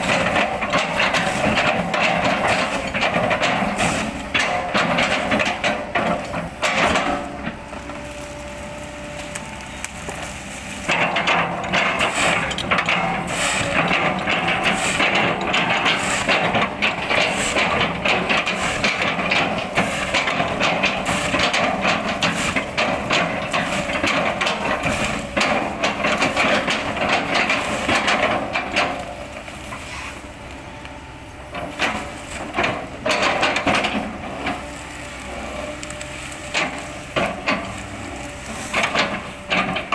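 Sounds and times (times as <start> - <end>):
diesel engine running: 0.0 - 39.9
wood cracking and splintering: 31.6 - 39.9.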